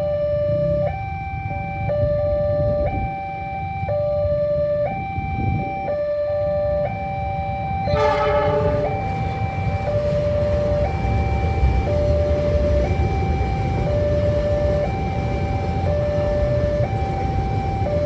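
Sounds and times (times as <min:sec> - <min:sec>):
electronic two-tone siren: 0:00.0 - 0:18.0
level crossing warning alarm: 0:00.0 - 0:18.0
low rumble of road traffic: 0:00.0 - 0:18.0
loud horn: 0:07.9 - 0:09.2.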